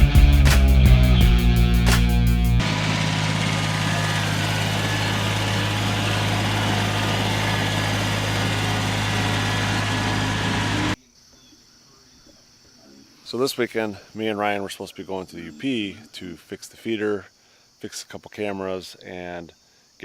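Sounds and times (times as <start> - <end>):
engine running steadily: 0.0 - 11.0.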